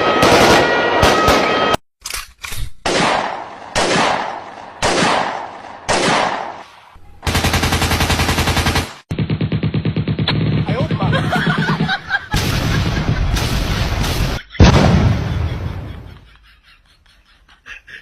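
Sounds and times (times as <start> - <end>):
sharp bangs: 8.8 - 16.2.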